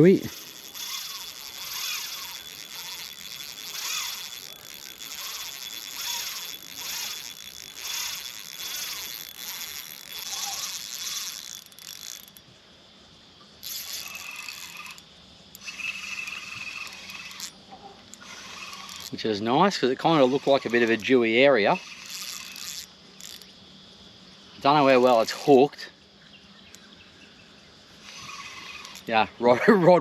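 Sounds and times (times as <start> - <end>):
fishing reel ratcheting: 0.0 - 12.4, 13.6 - 23.5, 24.6 - 25.7, 28.0 - 29.3.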